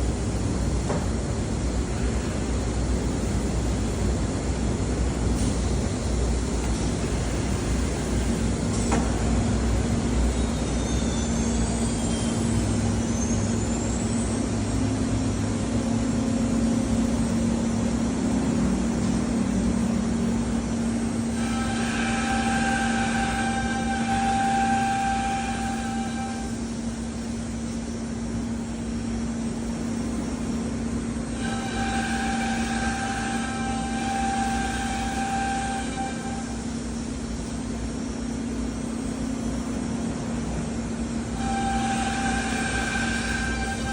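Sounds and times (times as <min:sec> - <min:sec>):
cnc router humming: 0:15.4 - 0:43.9.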